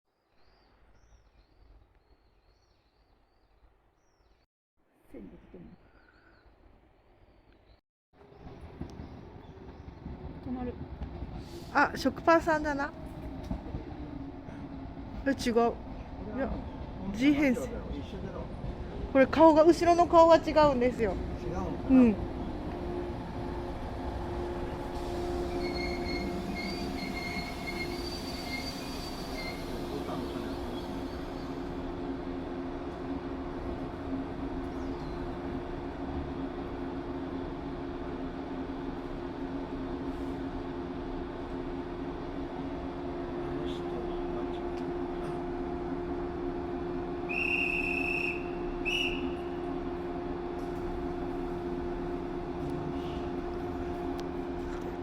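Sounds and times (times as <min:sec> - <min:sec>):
electric train humming past: 0:08.2 - 0:55.0
high steady whistle: 0:25.0 - 0:31.6, 0:47.2 - 0:49.6
high wheel squeal: 0:25.0 - 0:31.7.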